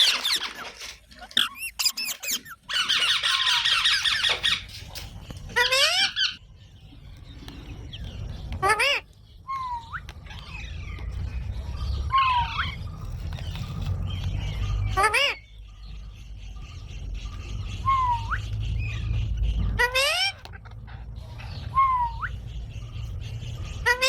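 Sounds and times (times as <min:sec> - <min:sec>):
parrot whistles and squawks: 0:00.0 - 0:04.8, 0:05.5 - 0:06.4, 0:08.6 - 0:11.1, 0:12.0 - 0:13.0, 0:17.7 - 0:22.5
steady low rumble: 0:04.6 - 0:24.0.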